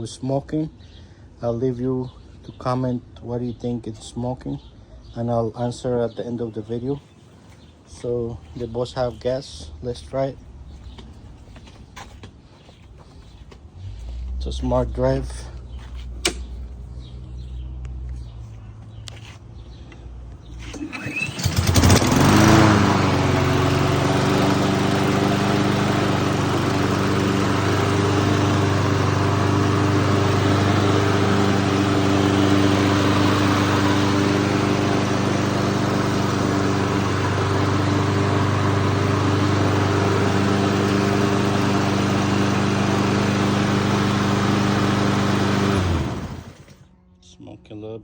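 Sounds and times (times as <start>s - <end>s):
lawn mower pull start: 20.5s - 46.9s
lawn mower engine running: 20.6s - 46.9s.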